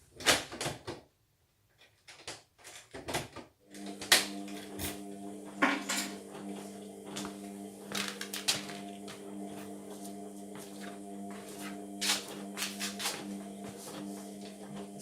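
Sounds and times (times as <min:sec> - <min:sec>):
washing machine humming: 0:03.6 - 0:15.0.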